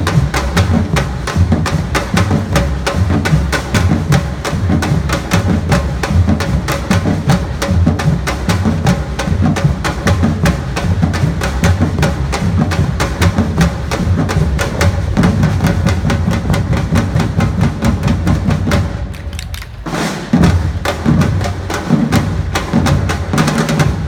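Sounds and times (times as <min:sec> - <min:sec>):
drum band playing: 0:00.0 - 0:24.0.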